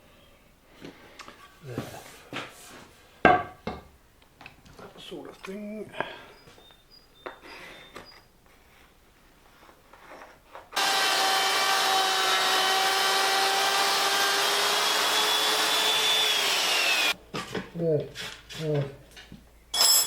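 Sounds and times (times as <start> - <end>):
power tool whining: 10.8 - 17.2.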